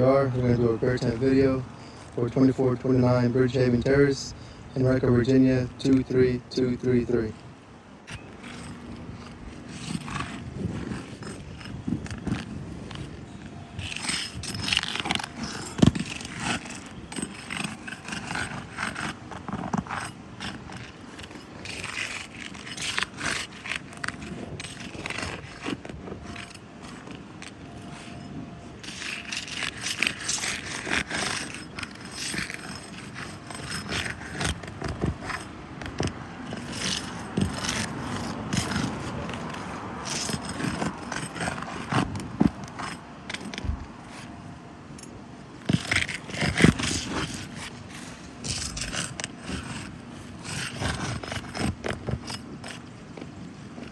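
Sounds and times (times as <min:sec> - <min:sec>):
scraping and clattering of tools: 0:08.1 - 0:53.9.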